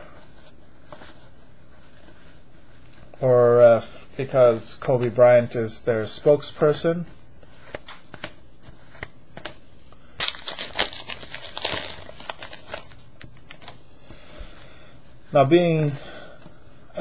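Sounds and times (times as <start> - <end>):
cards crinkling and clicking: 7.5 - 9.6, 10.2 - 13.8.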